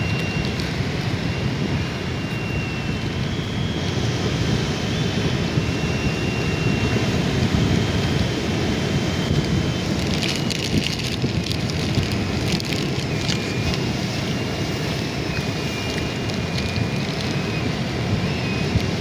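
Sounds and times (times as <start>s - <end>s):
wind on microphone: 0.0s - 19.0s
crackling rustling clicks: 0.1s - 1.2s, 9.3s - 17.7s.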